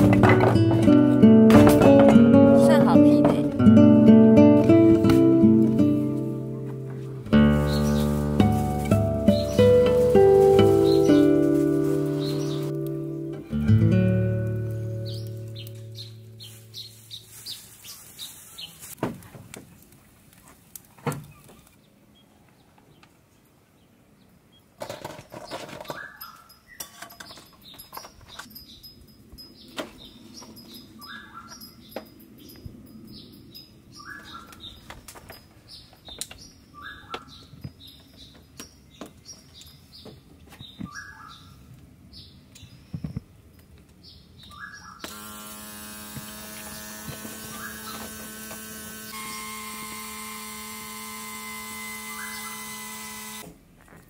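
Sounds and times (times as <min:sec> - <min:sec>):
bird calling: 0:07.5 - 0:08.2, 0:09.0 - 0:11.4, 0:12.0 - 0:12.8, 0:31.0 - 0:31.8, 0:34.0 - 0:34.9, 0:36.1 - 0:37.6, 0:40.8 - 0:41.6, 0:44.4 - 0:45.2, 0:47.4 - 0:48.1, 0:52.0 - 0:52.8.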